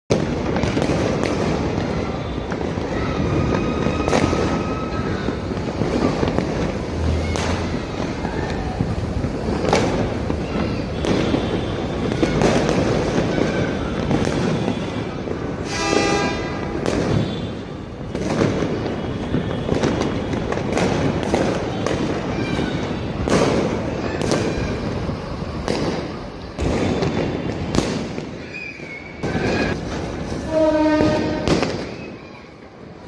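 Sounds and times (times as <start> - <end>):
fireworks crackle and rumble: 0.1 - 33.0
fireworks sharp bangs: 0.1 - 33.0.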